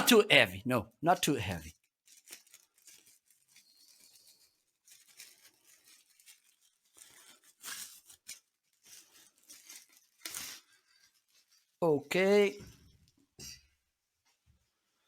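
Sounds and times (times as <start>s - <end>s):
packaging rustling: 1.6s - 11.8s.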